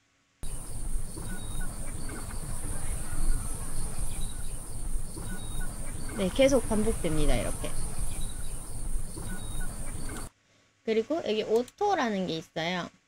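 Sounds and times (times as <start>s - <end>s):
high insect drone: 0.4s - 10.3s
low rumbling: 0.4s - 10.3s.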